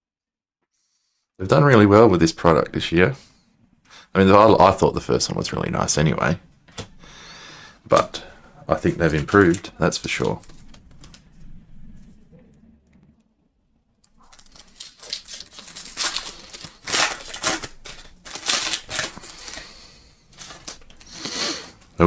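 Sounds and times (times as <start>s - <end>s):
card pack wrapper tearing and crinkling: 8.8s - 11.2s, 14.1s - 22.0s.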